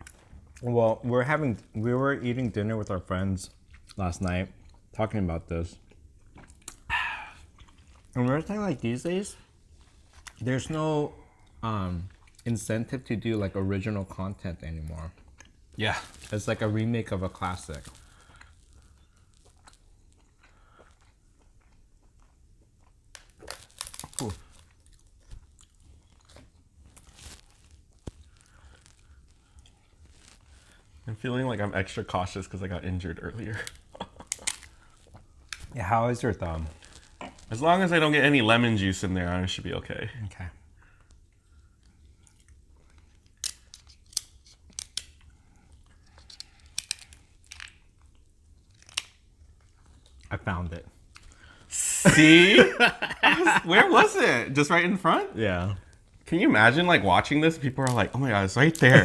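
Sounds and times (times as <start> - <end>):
crab legs cracking: 23.1 - 30.8, 33.6 - 35.8, 42.4 - 50.2.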